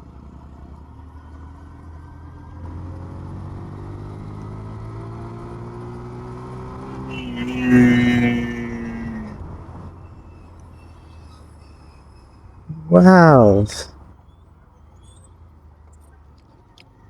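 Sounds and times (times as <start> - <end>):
vehicle passing by: 7.1 - 9.4.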